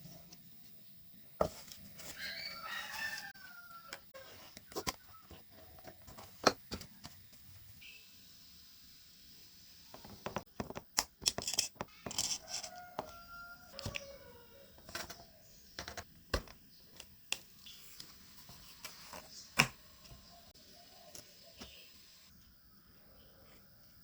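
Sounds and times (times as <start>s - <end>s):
squeaky scrapes: 2.0s - 3.3s.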